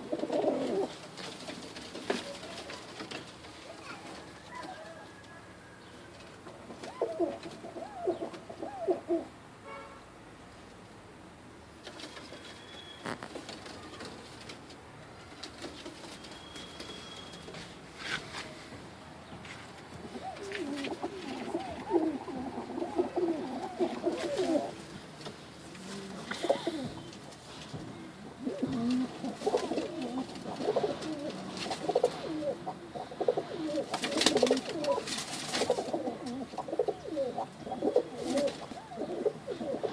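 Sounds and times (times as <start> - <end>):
pigeons cooing: 0.0 - 9.4, 20.0 - 39.9.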